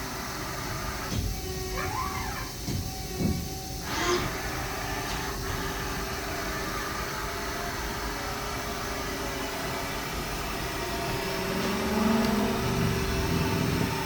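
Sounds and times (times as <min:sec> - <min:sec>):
lathe running with hum and hiss: 0:00.0 - 0:14.0.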